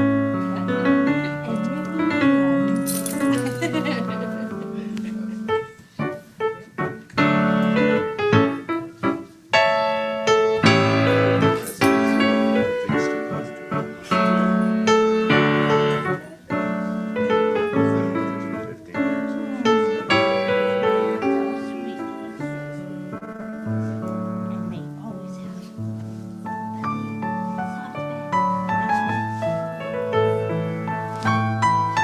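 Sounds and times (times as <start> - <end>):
piano music: 0.0 - 32.0.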